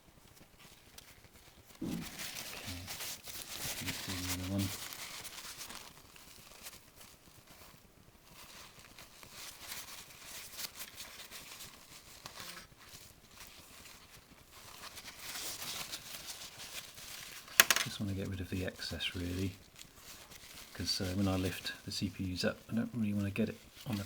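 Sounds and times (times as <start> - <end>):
paper towel scrubbing: 1.8 - 6.7, 18.0 - 24.0.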